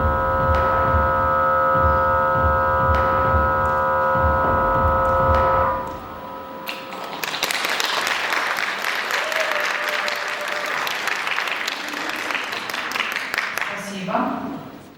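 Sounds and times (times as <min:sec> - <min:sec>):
music: 0:00.0 - 0:07.5
audience applause: 0:06.7 - 0:13.8.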